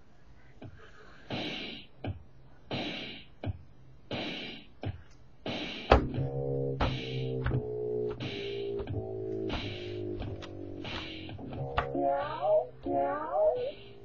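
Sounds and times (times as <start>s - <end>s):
kick drum thuds: 2.0s - 5.0s, 5.6s - 10.4s.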